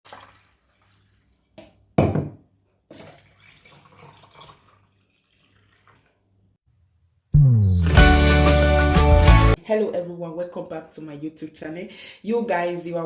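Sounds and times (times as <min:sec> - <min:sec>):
liquid pouring: 0:00.0 - 0:01.6, 0:02.9 - 0:06.3.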